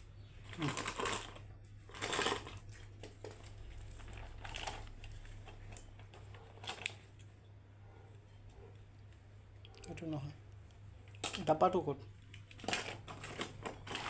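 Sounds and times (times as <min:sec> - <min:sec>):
low electrical hum: 0:00.0 - 0:14.0
rustling of packets: 0:00.2 - 0:07.3, 0:10.0 - 0:14.0.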